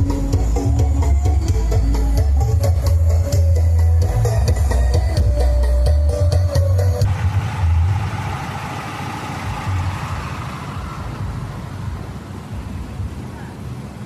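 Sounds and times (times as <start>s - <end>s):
loud sound-system music: 0.0s - 13.1s
low engine rumble: 0.0s - 14.0s
street noise: 0.0s - 14.0s.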